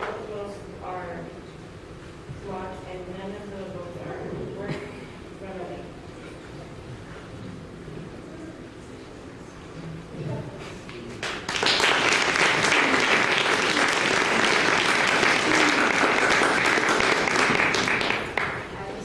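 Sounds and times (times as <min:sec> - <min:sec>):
audience applauding: 0:10.9 - 0:18.8.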